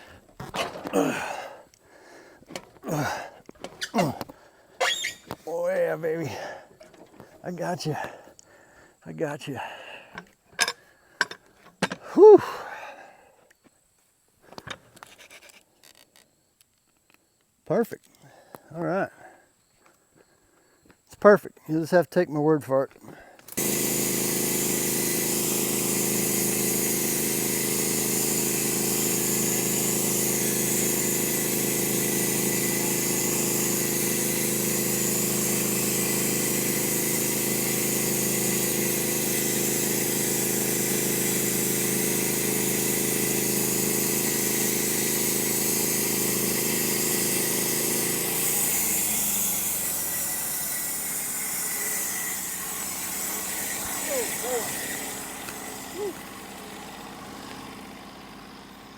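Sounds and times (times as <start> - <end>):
gasoline engine running: 53.8 - 58.9.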